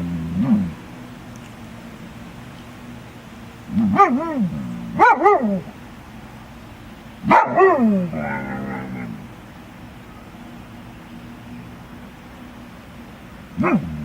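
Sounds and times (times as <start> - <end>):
dog grumbling: 0.0 - 0.8, 3.7 - 5.7, 7.5 - 9.3, 13.6 - 14.0
dog barking: 3.8 - 5.7, 7.2 - 9.1, 13.6 - 14.0.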